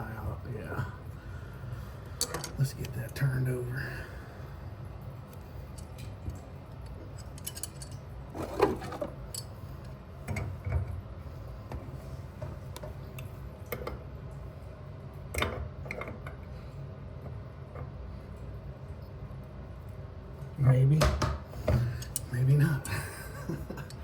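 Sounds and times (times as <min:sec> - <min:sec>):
steady low hum: 0:00.0 - 0:24.0
pliers clicking on metal fitting: 0:22.0 - 0:22.3.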